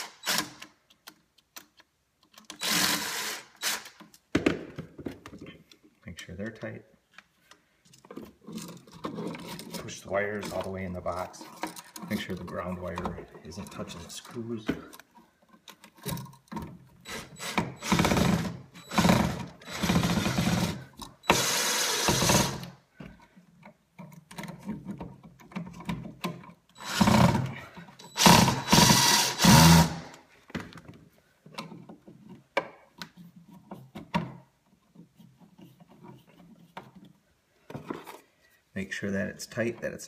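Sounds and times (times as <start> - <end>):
power drill driving screws: 0.0 - 0.7, 2.5 - 4.0, 17.0 - 22.8, 26.8 - 30.2
small clicks and handling clatter: 6.6 - 16.8.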